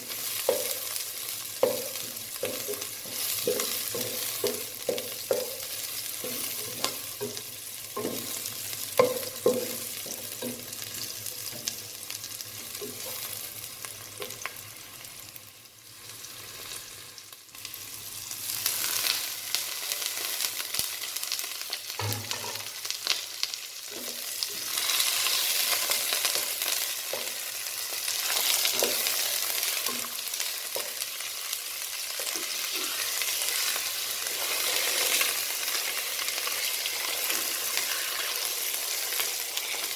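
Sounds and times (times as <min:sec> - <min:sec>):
food sizzling in hot oil: 0:00.0 - 0:39.9
spoon knocking against pot: 0:01.6 - 0:07.4, 0:08.0 - 0:08.4, 0:09.0 - 0:10.7, 0:22.0 - 0:22.7.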